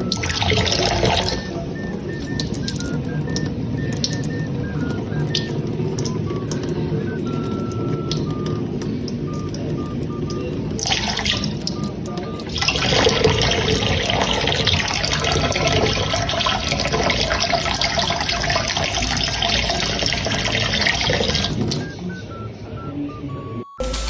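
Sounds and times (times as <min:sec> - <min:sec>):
faint short beeps: 0:00.0 - 0:12.5.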